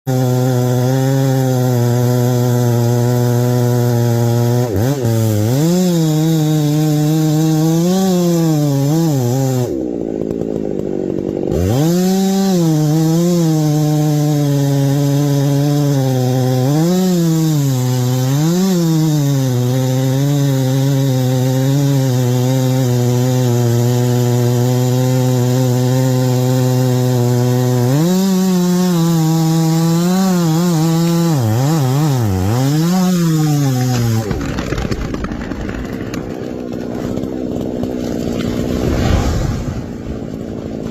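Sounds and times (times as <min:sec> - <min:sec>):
chainsaw cutting wood: 0:00.1 - 0:40.9.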